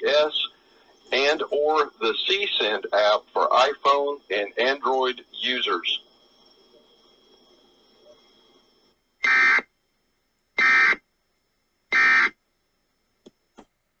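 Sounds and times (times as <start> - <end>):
faint high whine: 0.0 - 13.5.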